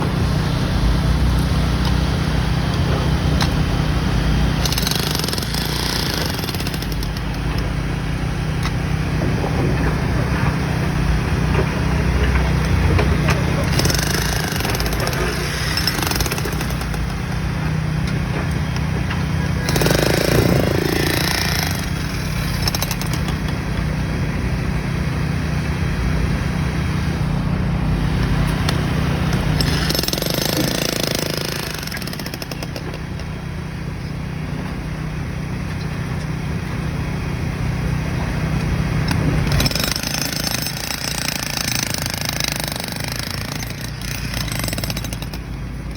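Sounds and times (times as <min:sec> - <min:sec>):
construction machinery humming: 0:00.0 - 0:45.9.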